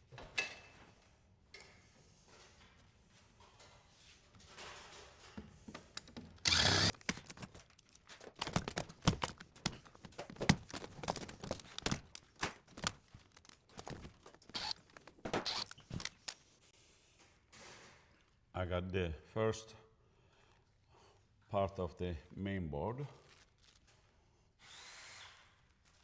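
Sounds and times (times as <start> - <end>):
metal and plastic clicks and knocks: 6.0 - 16.4.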